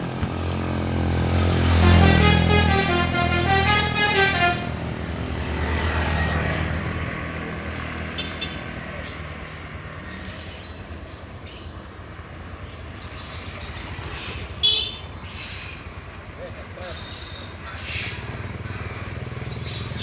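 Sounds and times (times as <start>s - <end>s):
bus engine rumbling past: 0.0s - 20.0s
road background noise: 0.0s - 20.0s
bus horn melody: 1.5s - 5.0s.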